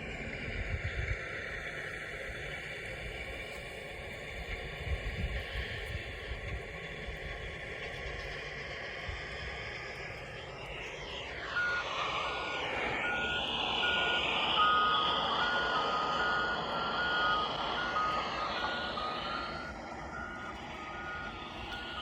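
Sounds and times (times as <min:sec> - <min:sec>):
passing vehicle: 0:07.2 - 0:22.0
backup alarms beeping: 0:10.4 - 0:22.0.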